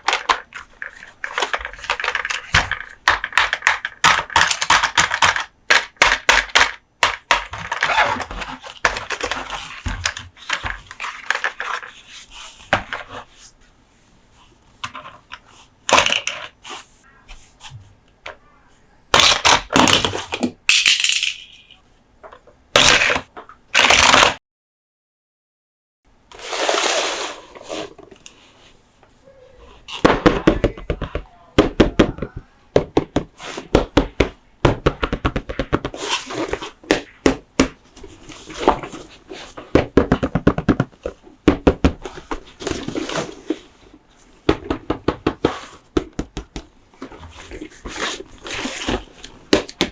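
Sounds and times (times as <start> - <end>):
packaging rustling scrapes: 26.3 - 28.8, 35.9 - 36.8, 42.1 - 44.1, 47.0 - 49.4.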